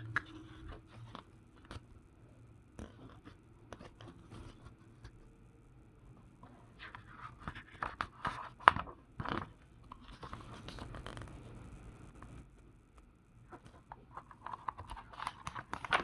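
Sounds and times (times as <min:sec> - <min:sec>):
paper pages rustling: 0:06.8 - 0:11.3, 0:13.5 - 0:16.0.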